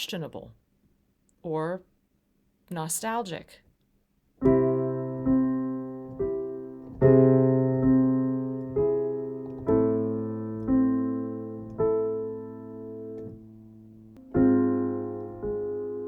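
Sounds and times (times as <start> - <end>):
piano playing slow chords: 4.4 - 16.0.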